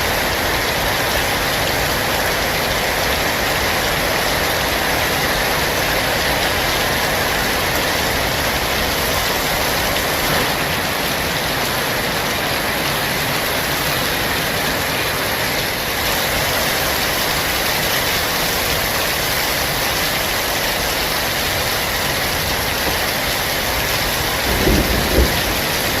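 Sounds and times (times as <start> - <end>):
heavy rain falling: 0.0 - 26.0.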